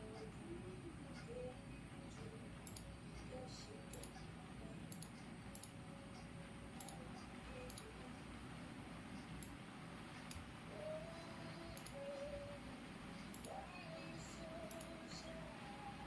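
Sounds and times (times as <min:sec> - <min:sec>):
low background rumble and hiss: 0:00.0 - 0:16.0
light sharp clicks: 0:04.9 - 0:07.9, 0:11.7 - 0:12.4, 0:13.2 - 0:13.6.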